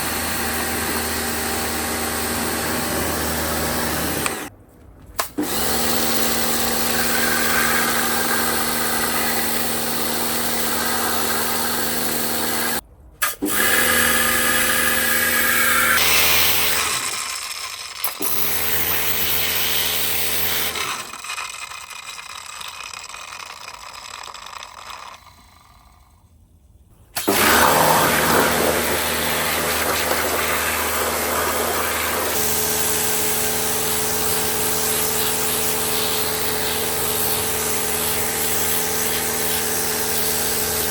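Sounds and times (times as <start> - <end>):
electric motor humming: 0.0 - 4.5, 5.4 - 12.8, 27.3 - 40.9.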